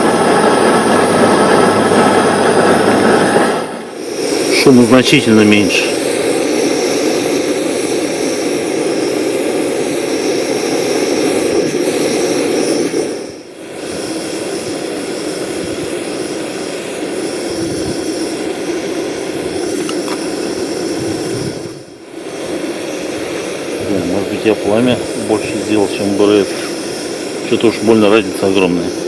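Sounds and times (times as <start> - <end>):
gas stove burner hissing: 0.0 - 29.0.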